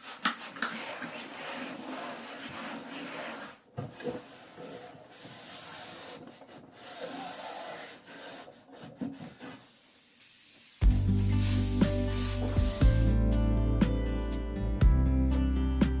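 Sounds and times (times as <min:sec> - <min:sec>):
cloth rubbing a hard surface: 0:00.0 - 0:13.2
background music: 0:10.8 - 0:16.0.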